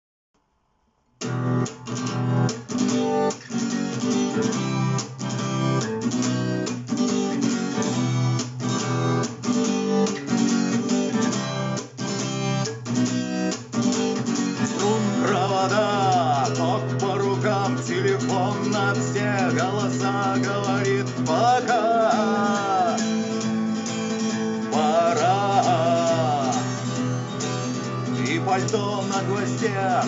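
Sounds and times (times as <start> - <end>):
acoustic guitar strumming: 1.2 - 30.0
person singing: 14.6 - 30.0.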